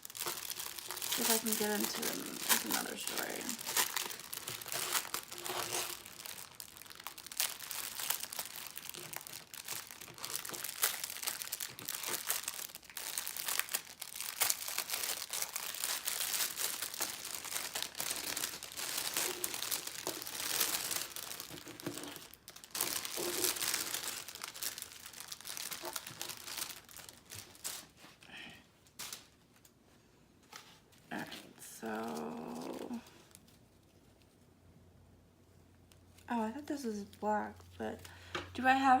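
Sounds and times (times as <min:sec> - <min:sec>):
plastic bags crinkling: 0:00.0 - 0:29.7.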